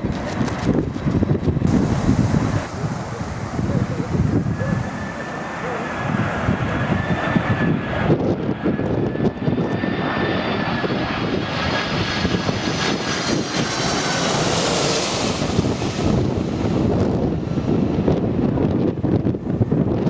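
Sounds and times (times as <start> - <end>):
low rumble: 0.0 - 8.1
jet airliner passing overhead: 0.0 - 20.0
wind buffeting microphone: 0.0 - 20.0.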